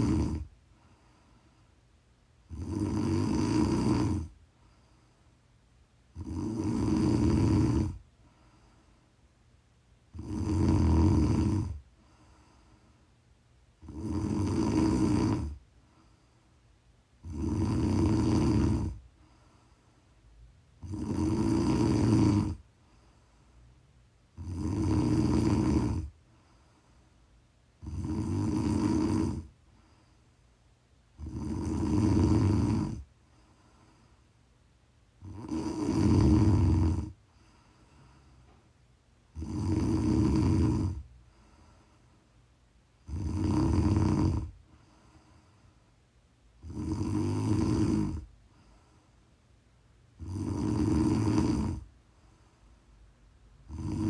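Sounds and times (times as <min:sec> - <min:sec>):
woman snoring: 0:00.0 - 0:00.5, 0:02.5 - 0:04.4, 0:06.1 - 0:08.0, 0:10.1 - 0:11.9, 0:13.8 - 0:15.6, 0:17.2 - 0:19.1, 0:20.8 - 0:22.6, 0:24.3 - 0:26.2, 0:27.8 - 0:29.6, 0:31.2 - 0:33.1, 0:35.2 - 0:37.2, 0:39.3 - 0:41.1, 0:43.0 - 0:44.6, 0:46.6 - 0:48.3, 0:50.2 - 0:51.9, 0:53.6 - 0:54.0.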